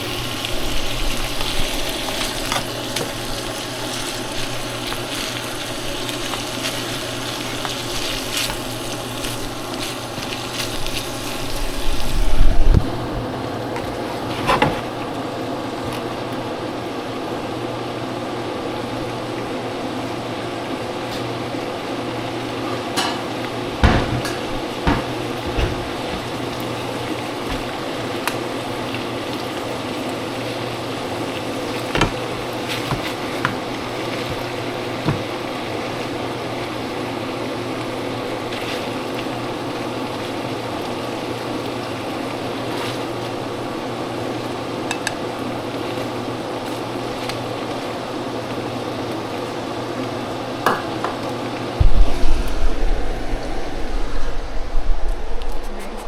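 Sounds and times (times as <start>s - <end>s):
kitchen hum: 0.0s - 56.0s
utensils and dishes clattering: 23.0s - 26.9s.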